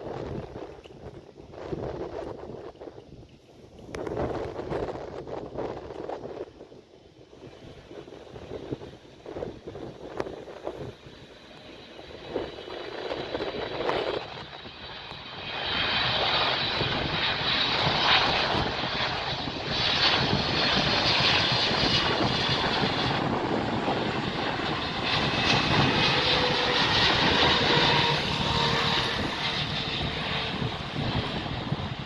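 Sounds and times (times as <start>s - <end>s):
aircraft engines running: 0.1s - 32.0s.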